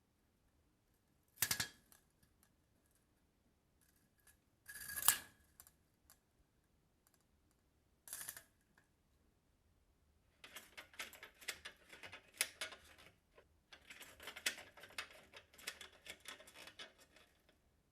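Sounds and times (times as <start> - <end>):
window blinds rattling and clicking: 10.4 - 17.6.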